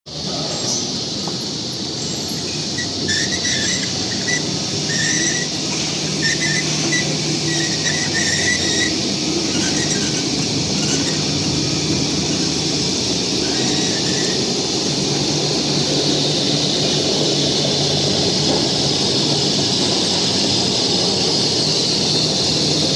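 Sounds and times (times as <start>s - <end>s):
machine hissing over low hum: 0.1s - 22.9s
short high squeaks: 0.7s - 15.3s.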